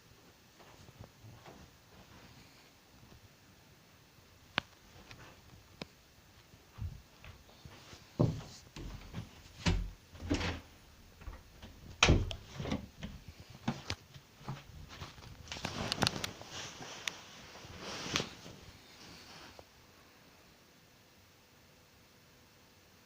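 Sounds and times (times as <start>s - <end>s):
knocks and bumps indoors: 8.2s - 13.2s.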